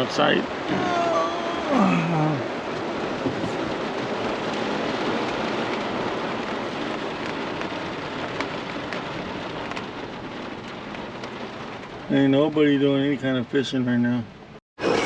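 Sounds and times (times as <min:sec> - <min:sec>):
heavy rain pouring: 0:00.0 - 0:15.0
rain drop ticks: 0:02.0 - 0:13.2.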